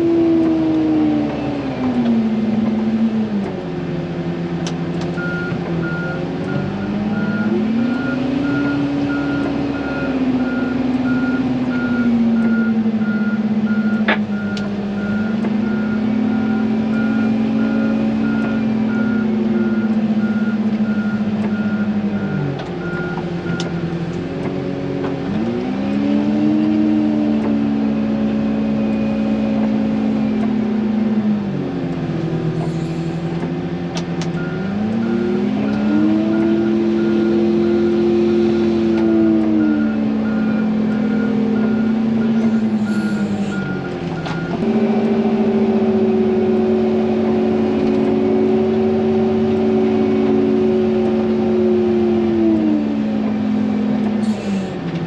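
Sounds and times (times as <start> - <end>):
diesel engine revving: 0.0 - 55.0
reversing alarm beeping: 5.2 - 23.8, 34.4 - 46.5.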